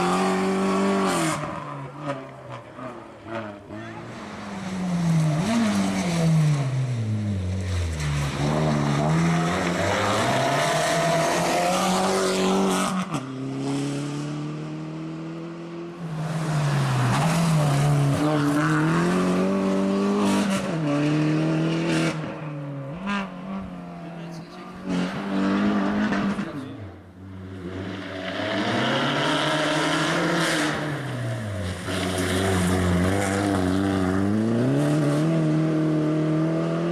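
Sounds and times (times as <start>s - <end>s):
turbocharged engine revving: 16.0s - 36.9s.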